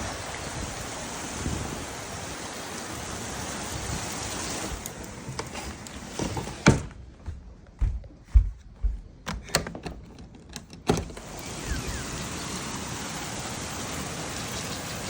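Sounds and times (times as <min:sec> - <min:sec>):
steady rain hiss: 0:00.0 - 0:06.8, 0:11.1 - 0:15.0.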